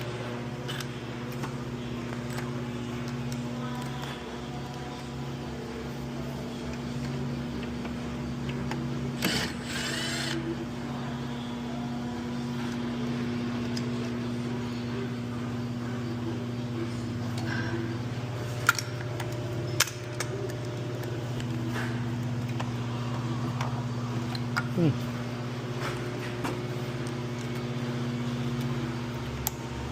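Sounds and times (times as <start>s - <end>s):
steady low fan hum: 0.0s - 29.9s
power tool running: 9.1s - 10.6s.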